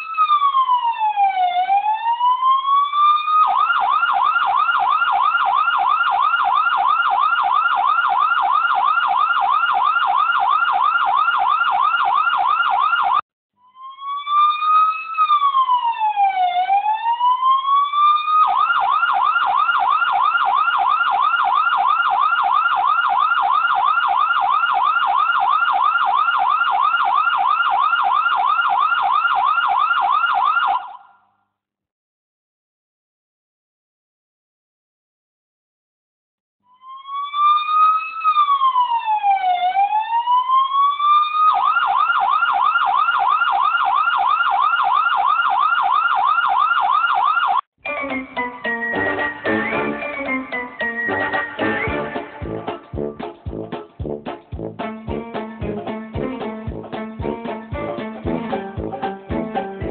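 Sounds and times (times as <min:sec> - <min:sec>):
electronic siren wail and yelp: 0:00.0 - 0:31.2, 0:36.7 - 0:53.1.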